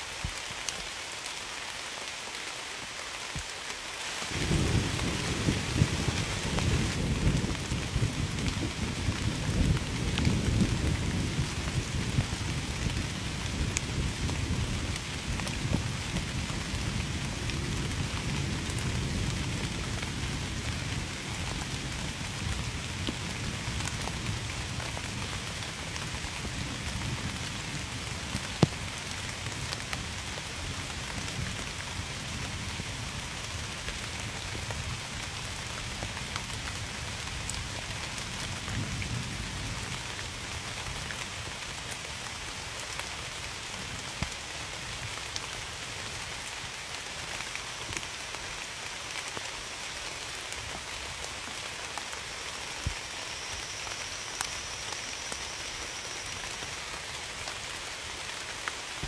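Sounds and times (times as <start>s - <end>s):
steady rain falling: 0.0s - 59.0s
distant thunder rumble: 4.3s - 12.8s.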